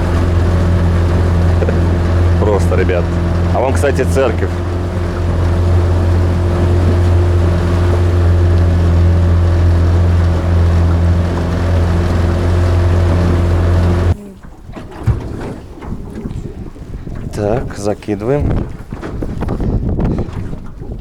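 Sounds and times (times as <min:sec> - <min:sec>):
outboard motor running: 0:00.0 - 0:16.3
water splashing: 0:00.0 - 0:17.7
wind noise: 0:14.7 - 0:21.0.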